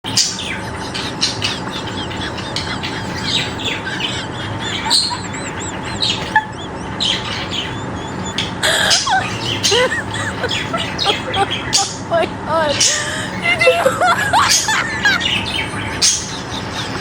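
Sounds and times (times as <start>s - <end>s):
whistled bird notes: 0.1s - 12.0s
bird chirping: 0.1s - 12.1s, 12.7s - 17.0s.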